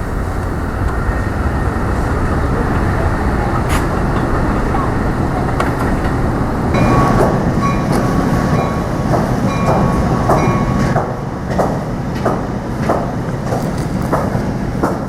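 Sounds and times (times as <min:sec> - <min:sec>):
train rumbling past: 0:00.0 - 0:15.0
wheels clacking over rail joints: 0:00.0 - 0:15.0.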